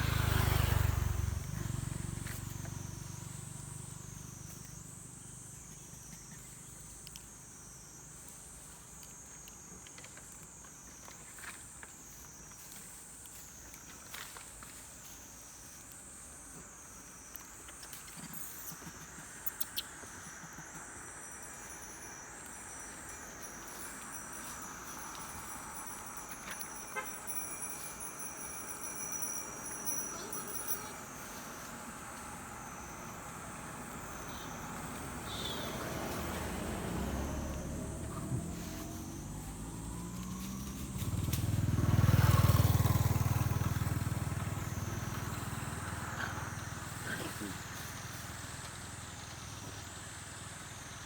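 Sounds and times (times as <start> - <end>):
vehicle rumble approaching: 0.0 - 7.2, 18.3 - 51.0
insects buzzing: 0.0 - 51.0.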